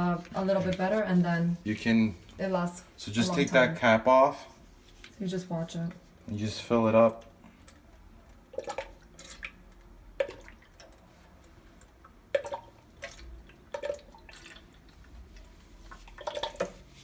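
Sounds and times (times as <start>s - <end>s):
liquid glugging from bottle: 7.1s - 11.1s, 12.3s - 14.9s, 16.0s - 17.0s.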